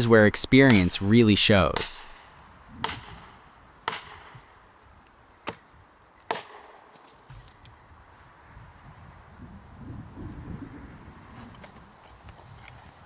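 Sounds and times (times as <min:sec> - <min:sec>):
tool striking wood: 0:00.7 - 0:00.9, 0:01.8 - 0:02.2, 0:02.8 - 0:04.4, 0:06.3 - 0:06.8.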